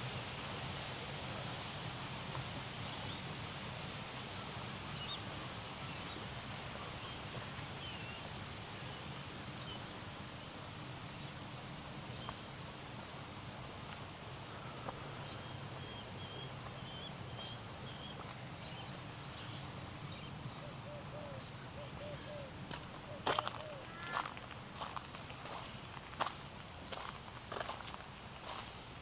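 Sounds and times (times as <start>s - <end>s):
flowing water: 0.0s - 18.7s.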